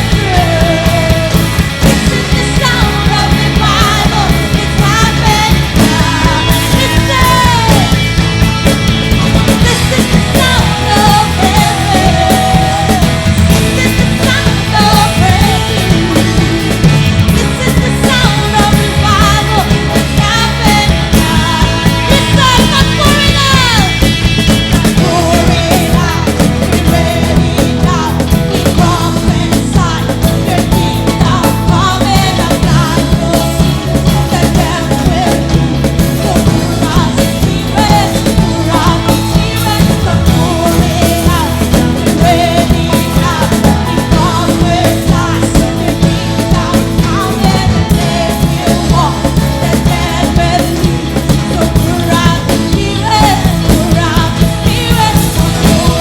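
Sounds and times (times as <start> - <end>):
rock band music with singing: 0.0 - 56.0.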